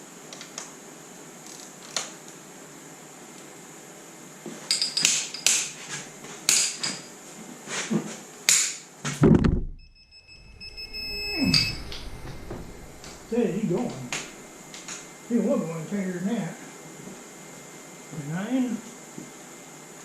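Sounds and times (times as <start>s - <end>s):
wrench clinking on metal: 4.7s - 5.7s
heavy thump: 9.1s - 14.6s.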